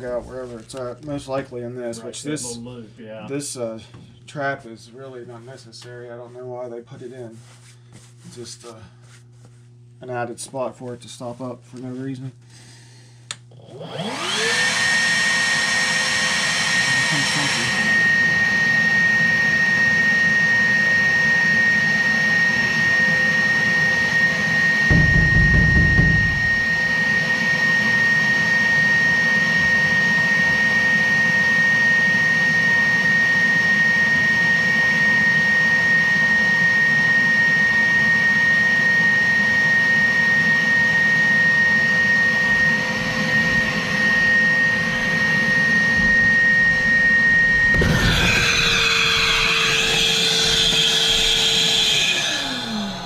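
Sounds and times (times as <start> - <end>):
shop vacuum whining: 12.4 - 53.0.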